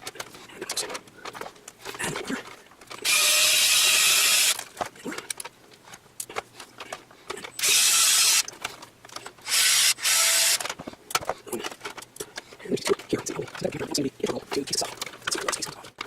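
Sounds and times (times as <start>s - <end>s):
electric drill-driver spinning: 3.0s - 4.6s, 7.6s - 8.5s, 9.4s - 10.7s
handling clatter: 10.6s - 16.0s.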